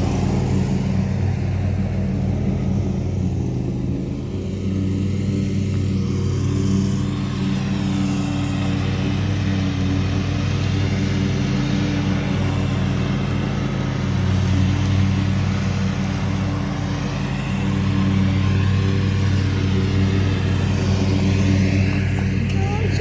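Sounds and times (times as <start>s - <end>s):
lawnmower engine running: 0.0s - 23.0s.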